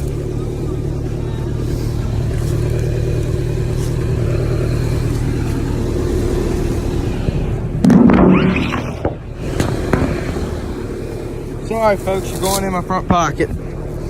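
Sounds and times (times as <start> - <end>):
vehicle engine running: 0.0 - 14.0
loud sudden noise: 7.8 - 10.5.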